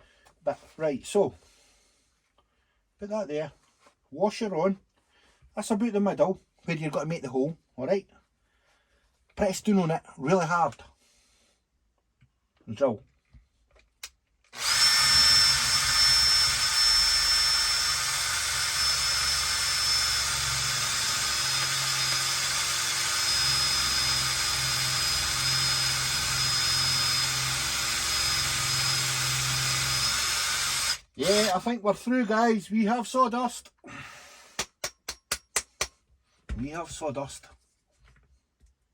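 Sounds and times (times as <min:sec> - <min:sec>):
electric drill boring into wood: 0:14.6 - 0:31.6.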